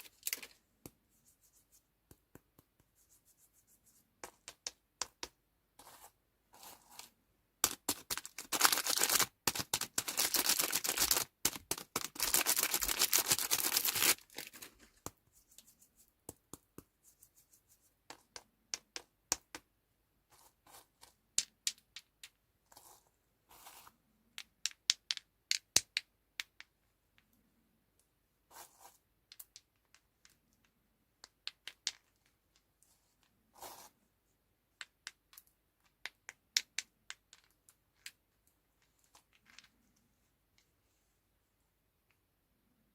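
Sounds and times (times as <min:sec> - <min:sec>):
candy wrapper crinkling: 0:07.6 - 0:14.9.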